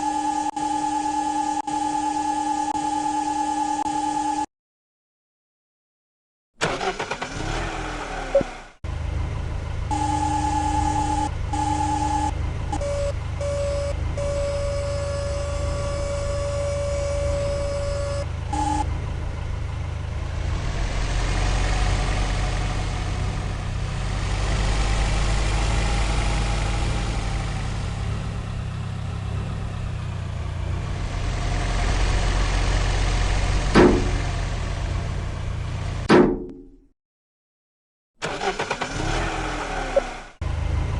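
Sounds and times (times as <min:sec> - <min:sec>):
held warning tone: 0:00.0 - 0:04.5, 0:09.9 - 0:19.0
heavy vehicle engine running: 0:06.6 - 0:36.1, 0:38.3 - 0:40.9
electronic warning beeps: 0:09.9 - 0:18.9
sharp knocks: 0:33.8 - 0:34.3, 0:36.1 - 0:36.8.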